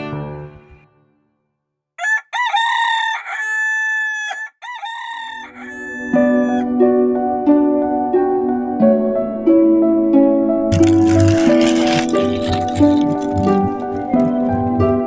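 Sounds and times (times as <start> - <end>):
rooster crowing: 2.0 - 6.6.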